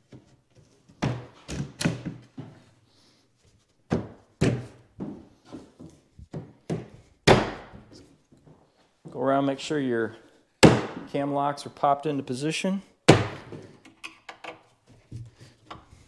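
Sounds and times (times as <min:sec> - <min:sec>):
knocks and thunks of cabinet panel: 0:01.0 - 0:02.6, 0:03.9 - 0:05.2, 0:06.3 - 0:07.9, 0:10.6 - 0:11.1, 0:13.1 - 0:13.7.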